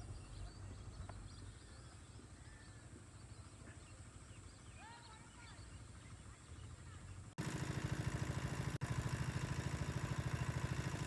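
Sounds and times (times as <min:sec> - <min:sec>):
small birds chirping: 0:00.0 - 0:08.2.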